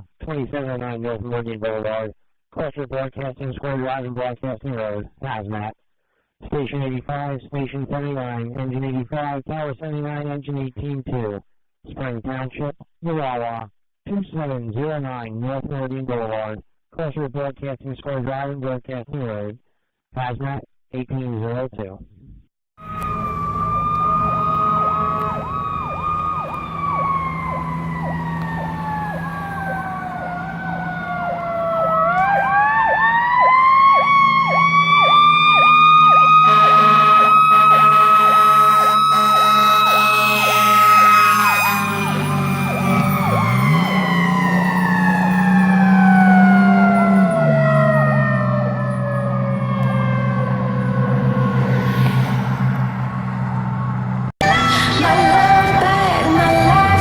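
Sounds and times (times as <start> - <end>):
deep air horn blasts: 22.8 - 32.8, 36.3 - 57.0
electronic siren yelping: 22.8 - 57.0.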